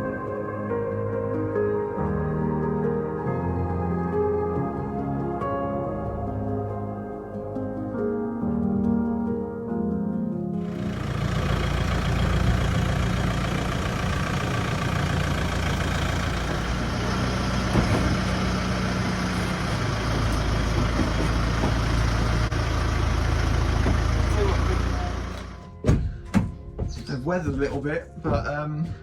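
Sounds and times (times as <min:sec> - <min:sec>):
van engine running: 0:10.6 - 0:29.0.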